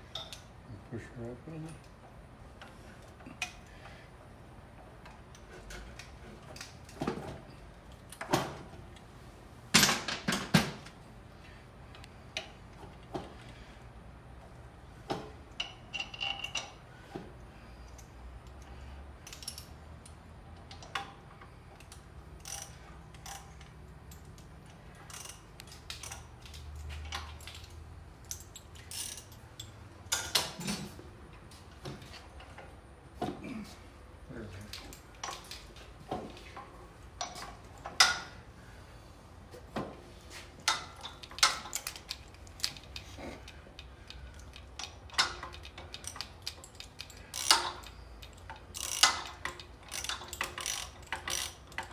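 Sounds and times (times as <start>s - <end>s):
metallic clinks of tools and parts: 0.0s - 0.5s, 15.5s - 16.8s, 17.8s - 32.7s, 34.4s - 38.4s, 40.3s - 51.9s.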